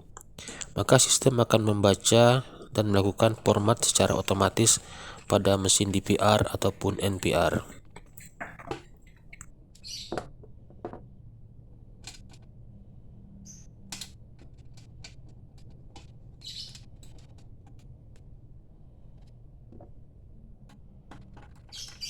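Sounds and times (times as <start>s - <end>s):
steady low hum: 0.0s - 9.4s.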